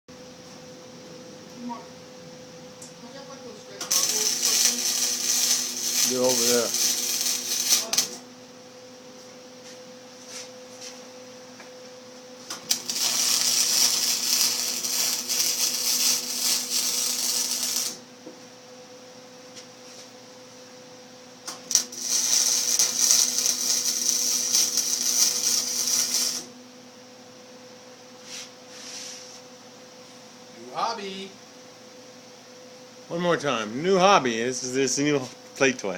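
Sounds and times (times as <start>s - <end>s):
steady hum: 0.1s - 35.9s
arc welding crackling: 3.8s - 8.3s, 12.4s - 18.1s, 21.4s - 26.6s
sharp crack of arc striking: 12.6s - 18.0s.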